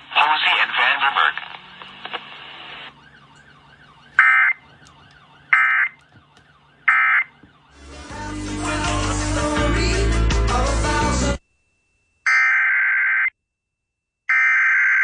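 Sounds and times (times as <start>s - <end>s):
radio music: 0.0s - 11.3s.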